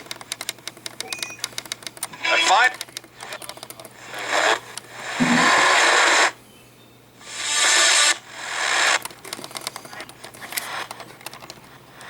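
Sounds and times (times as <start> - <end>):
radio static hiss bursts: 2.1 - 6.4, 7.2 - 9.4, 10.4 - 11.0.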